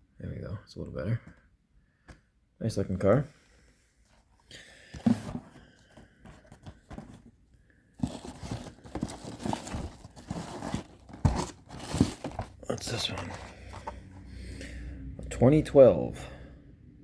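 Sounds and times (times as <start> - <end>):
card and plastic crinkling: 8.0 - 14.2.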